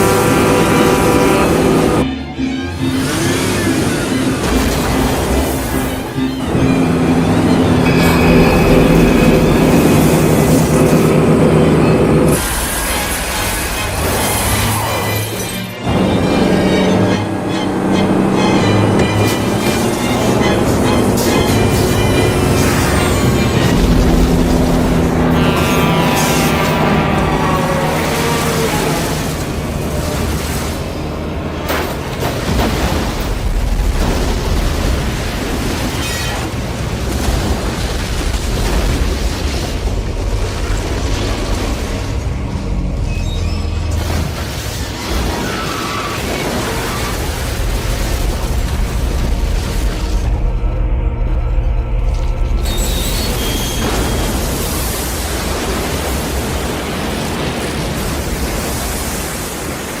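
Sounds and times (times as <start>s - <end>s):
loud rushing noise: 0.0s - 2.1s, 2.8s - 15.0s, 15.8s - 35.8s
truck crash explosion: 3.3s - 17.3s, 18.3s - 60.0s
deep rumble: 15.9s - 45.3s, 46.6s - 58.9s.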